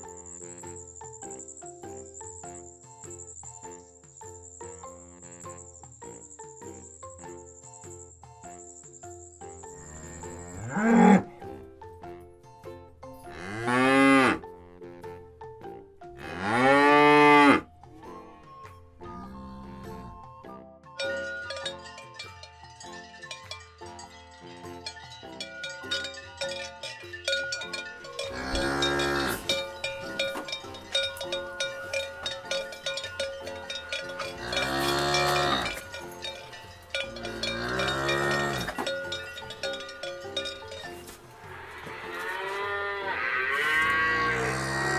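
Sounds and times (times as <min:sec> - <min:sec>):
cowbells clinking: 0:00.0 - 0:20.3, 0:20.9 - 0:44.9
cow mooing: 0:09.8 - 0:11.4, 0:13.3 - 0:14.4, 0:16.2 - 0:17.7, 0:19.0 - 0:20.2, 0:28.1 - 0:39.8, 0:40.8 - 0:44.9.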